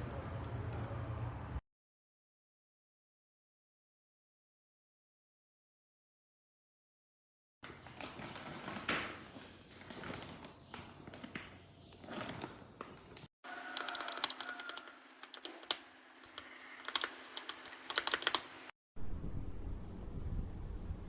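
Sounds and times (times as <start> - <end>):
mechanical keyboard typing: 13.6 - 15.8, 16.8 - 18.5
low steady rumble: 19.0 - 21.0.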